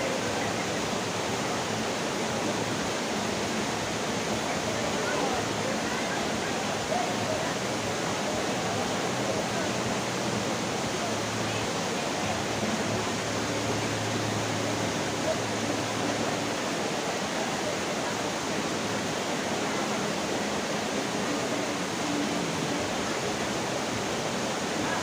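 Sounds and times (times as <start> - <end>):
waterfall rushing: 0.0 - 25.0.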